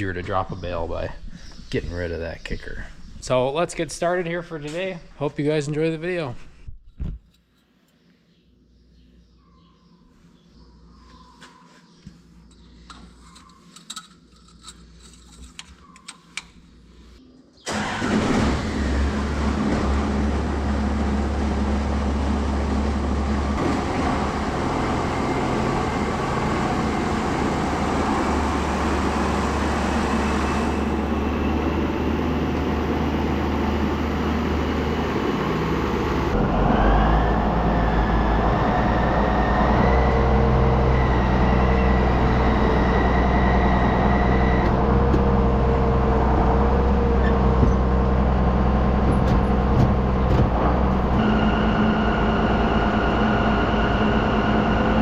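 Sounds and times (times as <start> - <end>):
tractor diesel engine running: 17.6 - 55.0.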